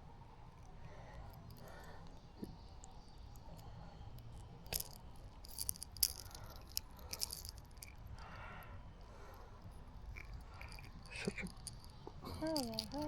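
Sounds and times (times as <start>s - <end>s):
fishing lure hooks rattling: 4.2s - 8.3s, 9.9s - 13.0s.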